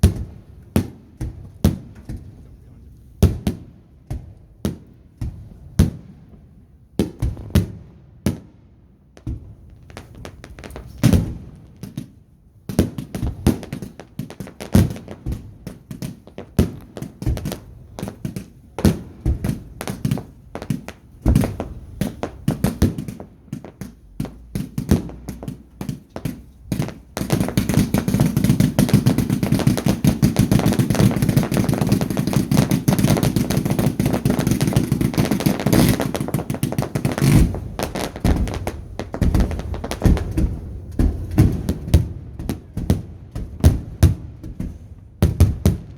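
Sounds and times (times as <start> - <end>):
fireworks bangs and pops: 0.0 - 45.9
fireworks crackling: 9.2 - 45.9.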